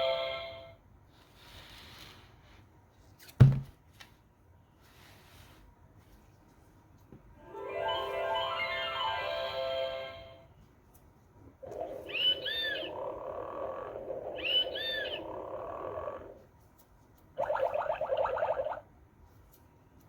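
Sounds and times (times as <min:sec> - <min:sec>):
shimmering chime run: 0:07.5 - 0:10.3
chirping animal calls: 0:11.6 - 0:16.4.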